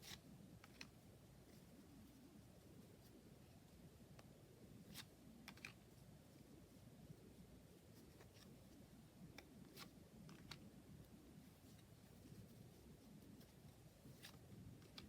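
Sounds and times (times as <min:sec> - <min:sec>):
cards clicking and tapping: 0:00.0 - 0:01.0, 0:04.9 - 0:05.8, 0:09.3 - 0:10.7, 0:14.2 - 0:15.0
low room hum: 0:00.0 - 0:15.0.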